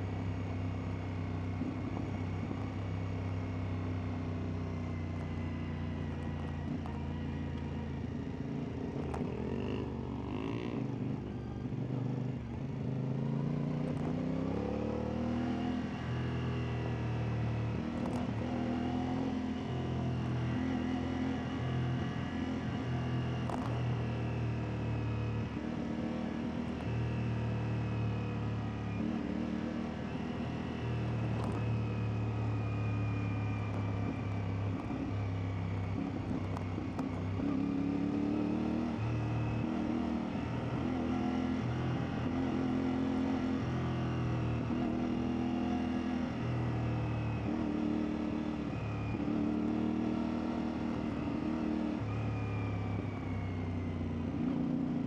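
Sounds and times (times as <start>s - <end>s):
motorcycle engine revving: 8.8s - 31.8s.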